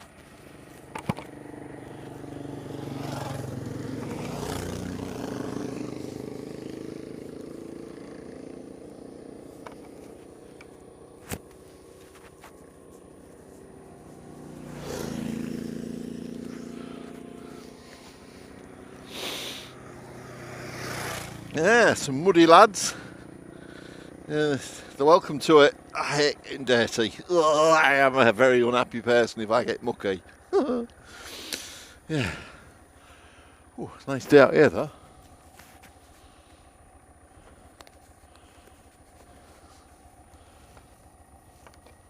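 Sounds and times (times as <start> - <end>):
motorcycle engine idling: 0.0 - 42.0
vehicles passing: 0.0 - 42.0.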